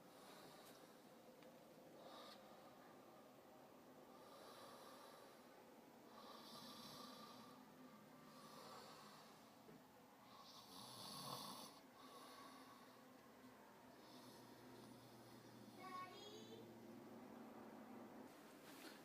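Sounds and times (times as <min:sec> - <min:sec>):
man snoring: 0:06.2 - 0:07.6, 0:10.4 - 0:12.6.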